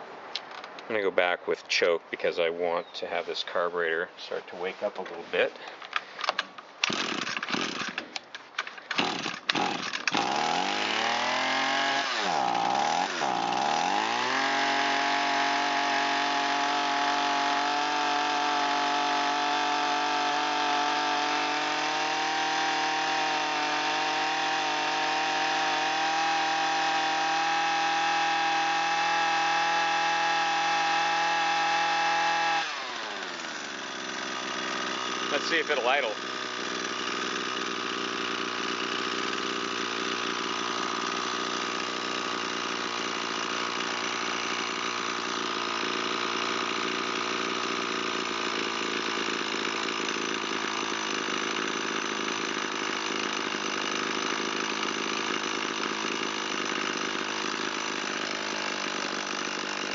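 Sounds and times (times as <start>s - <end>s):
string trimmer engine running: 4.6s - 59.9s
starter cord pulls: 5.0s - 11.1s.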